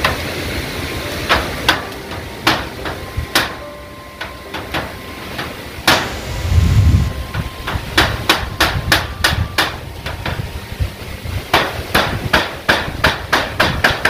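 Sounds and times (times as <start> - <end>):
hammer on metal roofing: 1.2 - 6.2, 7.2 - 10.6, 11.4 - 14.0
low rumble: 5.0 - 11.5.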